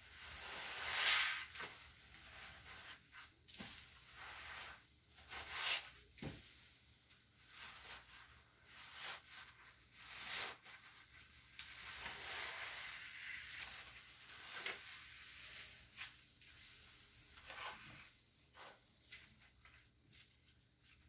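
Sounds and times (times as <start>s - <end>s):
wet sponge scrubbing: 0.1s - 3.3s, 7.5s - 16.2s.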